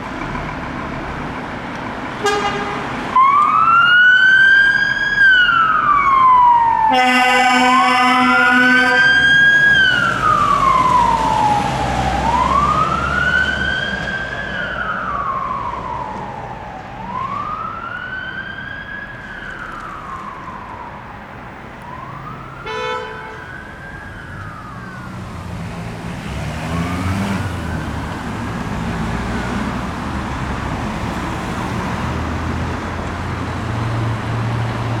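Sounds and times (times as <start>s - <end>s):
air horn blast: 2.2s - 3.0s, 6.9s - 9.2s, 22.6s - 23.5s
fire engine siren wailing: 2.2s - 35.0s.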